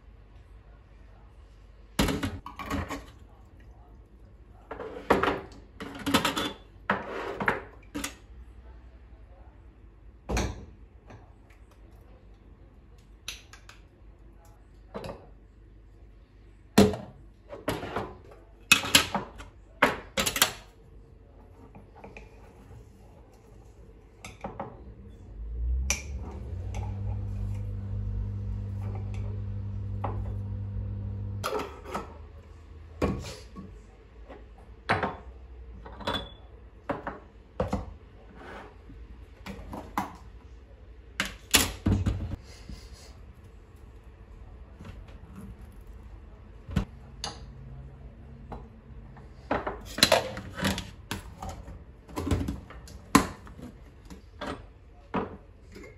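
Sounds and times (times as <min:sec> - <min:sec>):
steady low hum: 0:25.0 - 0:31.5.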